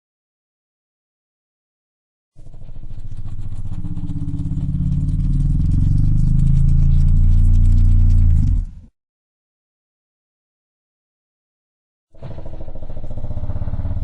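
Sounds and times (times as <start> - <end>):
deep pulsing dinosaur growl: 2.4 - 8.9, 12.2 - 14.0.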